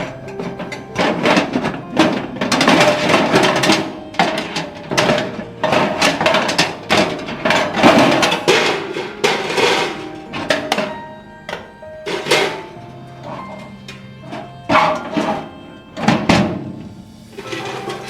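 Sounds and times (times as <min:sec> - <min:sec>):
hand tool knocking on metal: 0:00.0 - 0:12.6.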